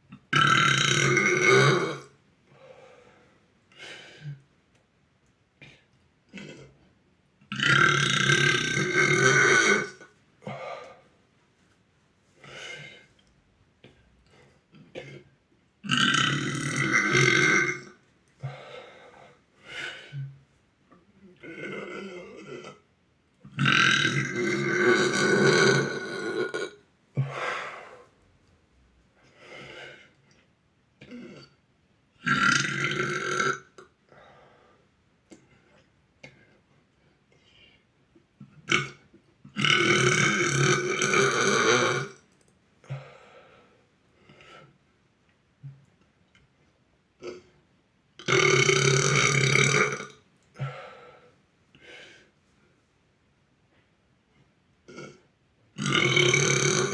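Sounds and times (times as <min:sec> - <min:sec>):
boy burping: 0:00.1 - 0:02.1, 0:07.5 - 0:10.1, 0:14.8 - 0:18.0, 0:21.4 - 0:22.9, 0:23.5 - 0:26.8, 0:31.0 - 0:31.6, 0:38.5 - 0:42.2, 0:48.2 - 0:50.7, 0:54.9 - 0:56.9.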